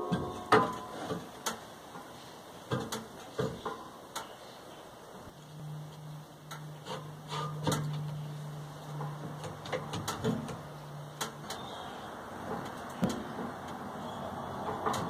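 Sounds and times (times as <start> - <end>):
steady low hum: 3.6 - 15.0.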